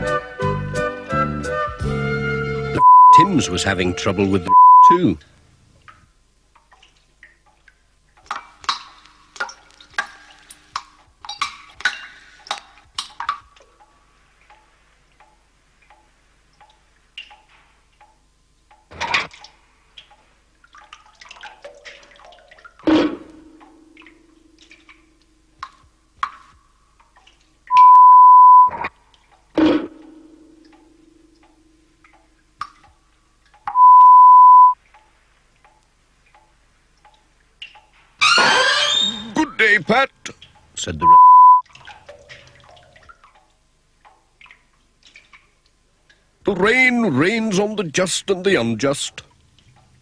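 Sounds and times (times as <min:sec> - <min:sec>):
censor bleep: 0:02.8 - 0:03.4, 0:04.5 - 0:05.0, 0:27.7 - 0:28.8, 0:33.7 - 0:34.8, 0:41.0 - 0:41.6
water dripping: 0:04.4 - 0:50.0.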